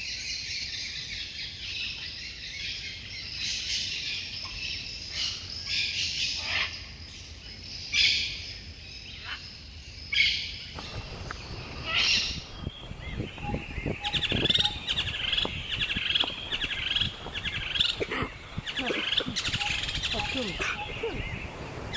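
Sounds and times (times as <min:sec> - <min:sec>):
birds chirping: 0:10.8 - 0:21.9
birds warbling chatter: 0:10.8 - 0:21.9.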